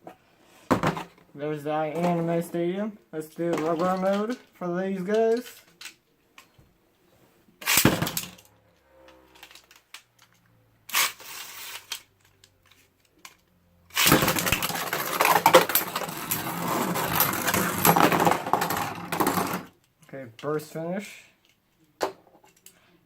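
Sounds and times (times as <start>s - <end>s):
spinning tops clattering: 14.0s - 19.7s.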